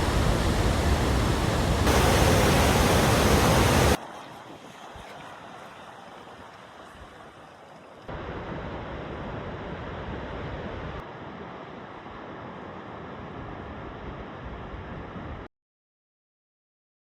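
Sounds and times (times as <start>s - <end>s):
waterfall rushing: 0.0s - 4.0s.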